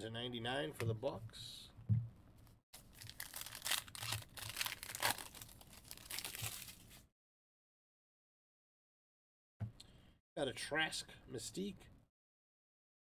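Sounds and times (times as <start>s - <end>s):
foil wrapper tearing and crinkling: 2.8s - 7.0s.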